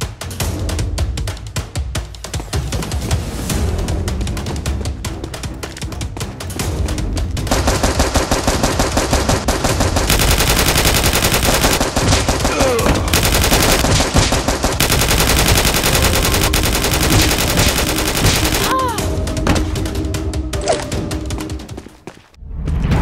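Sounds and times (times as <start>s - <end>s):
rapid automatic gunfire: 7.5s - 18.9s.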